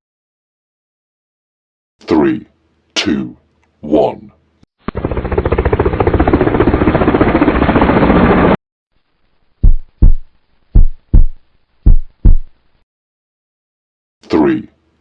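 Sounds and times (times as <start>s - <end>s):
rapid rattling pulse: 4.8s - 8.6s
heartbeat thumps: 9.6s - 12.6s.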